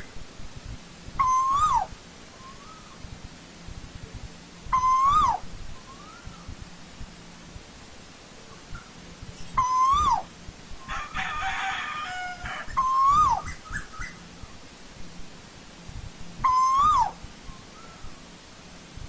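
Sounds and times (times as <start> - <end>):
bird whistled call: 1.2 - 3.0, 4.7 - 6.5, 9.6 - 10.3, 12.7 - 14.2, 16.4 - 18.1.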